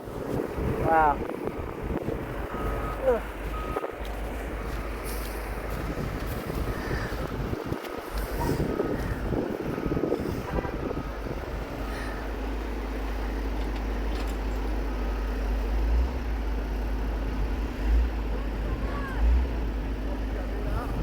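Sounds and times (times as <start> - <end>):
wind buffeting microphone: 0.0 - 13.1.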